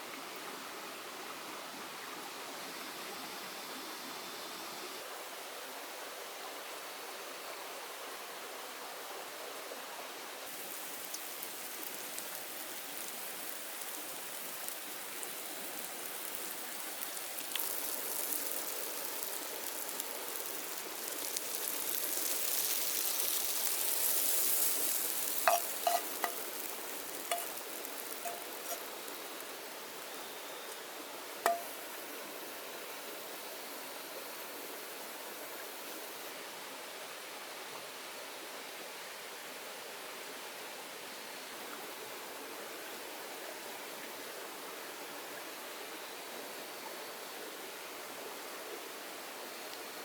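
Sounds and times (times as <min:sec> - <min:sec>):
food sizzling in a pan: 0:10.5 - 0:32.8
utensil clinking against pan: 0:25.4 - 0:26.5, 0:27.2 - 0:28.9, 0:31.5 - 0:31.7.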